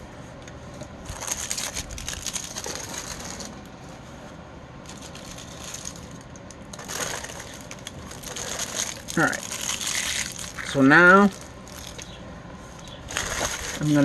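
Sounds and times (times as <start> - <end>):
small items crinkling and clicking: 1.1 - 3.7, 4.9 - 12.2, 12.8 - 14.0.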